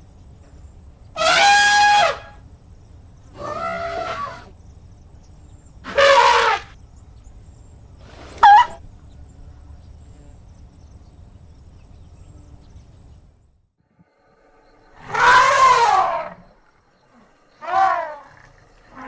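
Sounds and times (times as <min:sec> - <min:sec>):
elephant trumpeting: 0:01.2 - 0:02.4, 0:03.3 - 0:04.5, 0:05.9 - 0:06.8, 0:08.1 - 0:08.8, 0:14.9 - 0:16.5, 0:17.6 - 0:19.0.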